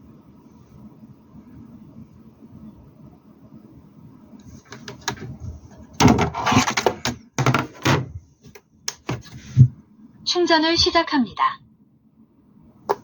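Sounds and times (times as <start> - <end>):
plastic knocking and scraping: 4.6 - 9.8.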